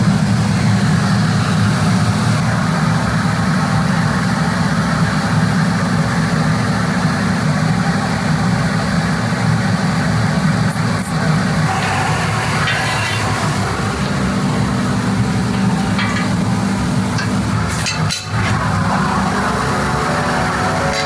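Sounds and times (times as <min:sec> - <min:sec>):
welding arc sizzling crackle: 0:10.5 - 0:21.0.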